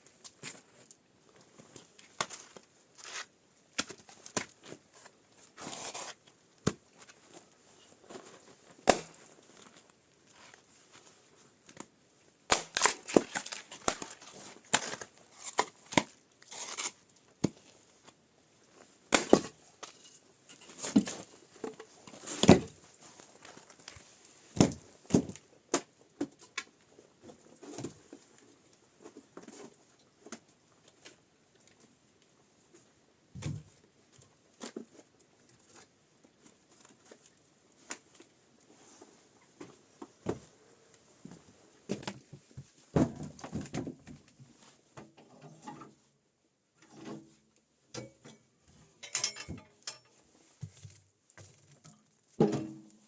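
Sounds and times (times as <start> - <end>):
crinkling and tearing: 1.8 - 6.4, 12.5 - 17.2.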